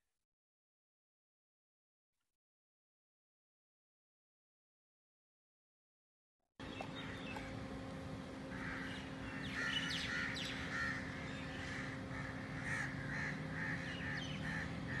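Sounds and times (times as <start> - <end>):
low hum: 6.6 - 15.0
crows cawing: 6.9 - 7.6, 8.5 - 15.0.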